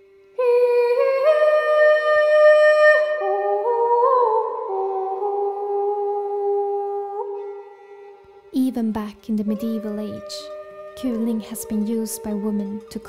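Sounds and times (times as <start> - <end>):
woman singing high herding call: 8.6 - 13.0.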